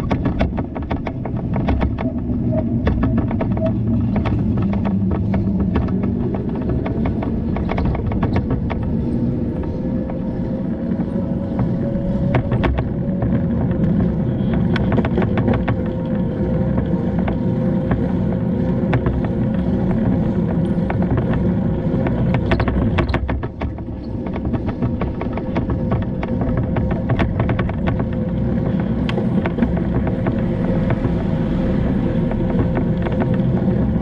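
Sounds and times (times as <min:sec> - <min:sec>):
bicycle tyre rumble: 0:00.0 - 0:34.0
steady hum: 0:00.0 - 0:34.0.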